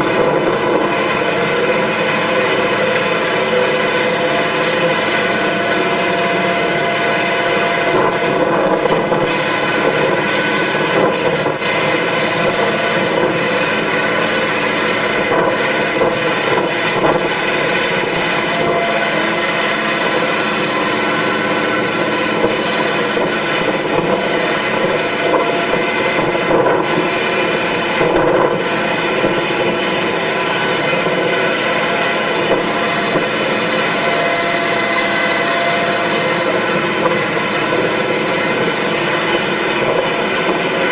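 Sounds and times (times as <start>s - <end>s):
heavy machine engine droning: 0.0s - 40.9s.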